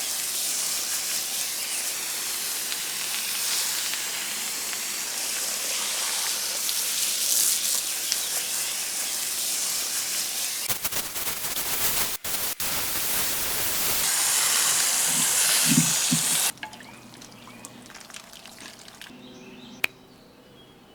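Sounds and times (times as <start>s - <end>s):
hose water spraying on metal: 0.0s - 16.6s.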